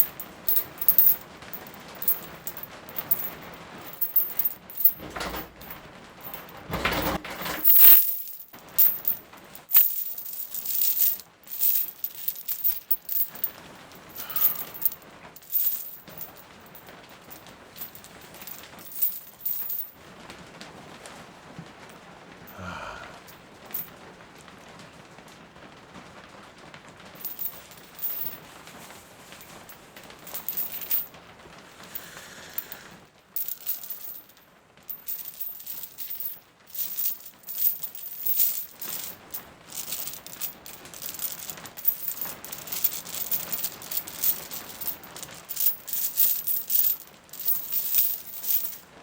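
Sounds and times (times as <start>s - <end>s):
small hard objects rattling: 6.2s - 16.4s, 33.4s - 48.8s
steady rain: 18.8s - 33.5s.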